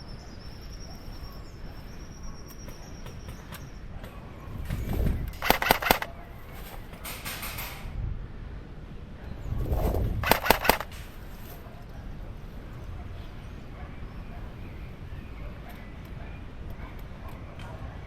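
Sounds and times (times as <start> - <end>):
airsoft gun firing bursts: 5.3 - 6.1, 10.2 - 11.0.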